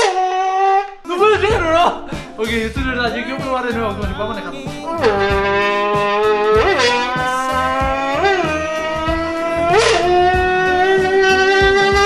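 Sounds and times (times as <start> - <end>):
voice buzzing through a can: 4.8 - 12.0.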